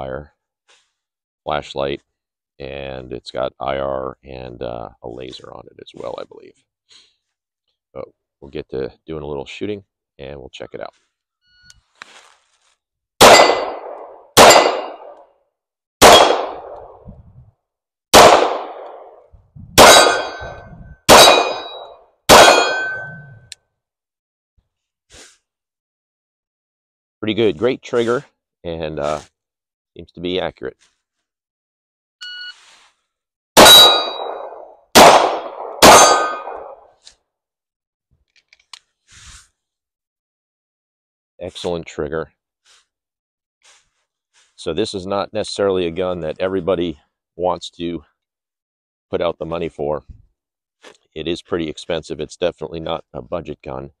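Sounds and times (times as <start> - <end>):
pistol shots: 13.2 - 15.2, 16.0 - 17.0, 18.2 - 19.2, 19.8 - 23.1, 33.6 - 36.8.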